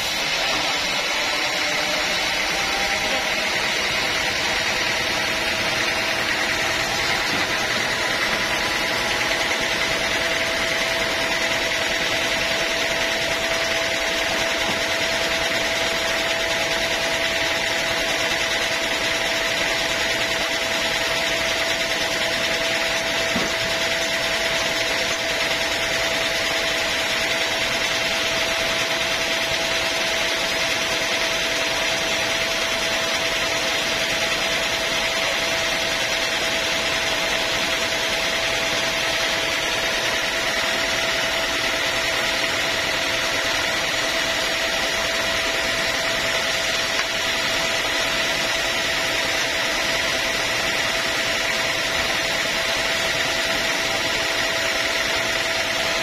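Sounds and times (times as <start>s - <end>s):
sawmill saw whining: 0.0s - 56.0s.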